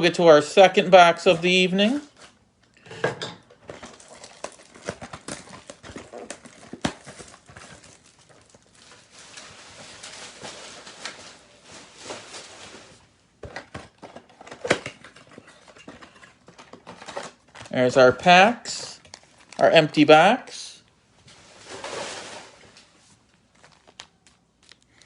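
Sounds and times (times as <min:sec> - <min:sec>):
crinkling foil wrapping: 0:03.6 - 0:17.8, 0:18.8 - 0:19.8, 0:20.8 - 0:25.0.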